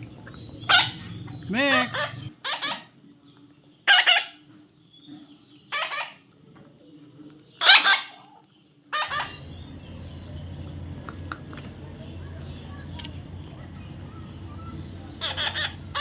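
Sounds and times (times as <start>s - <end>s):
parrot squawking: 0.6s - 2.9s, 3.9s - 4.4s, 5.7s - 6.2s, 7.6s - 8.3s, 8.9s - 9.7s, 14.1s - 16.0s
steady low hum: 9.1s - 16.0s.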